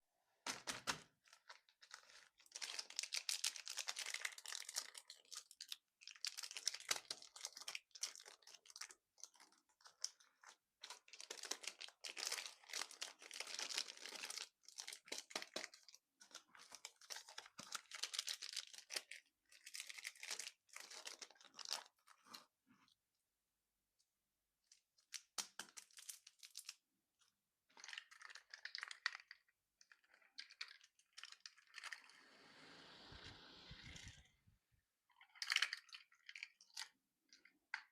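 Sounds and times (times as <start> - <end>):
candy wrappers crinkling and tearing: 1.2 - 22.4, 25.0 - 26.8, 27.7 - 32.0, 35.2 - 37.9.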